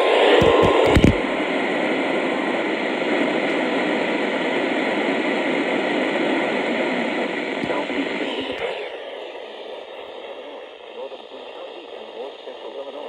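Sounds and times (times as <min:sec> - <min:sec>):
radio static hiss: 0:00.0 - 0:13.0
clicks: 0:00.4 - 0:01.3, 0:07.6 - 0:08.7.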